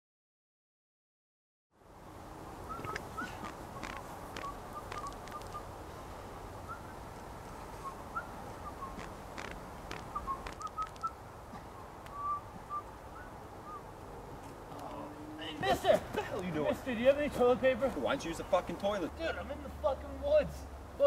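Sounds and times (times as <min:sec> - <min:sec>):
low background hiss: 0:01.8 - 0:21.0
birds chirping: 0:02.4 - 0:15.6
faint clicks: 0:02.8 - 0:05.6, 0:08.8 - 0:11.2.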